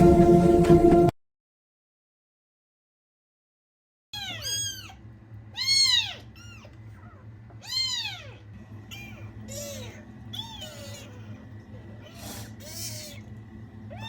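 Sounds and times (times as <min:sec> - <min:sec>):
kitten meowing: 0:04.2 - 0:05.0, 0:05.6 - 0:11.4.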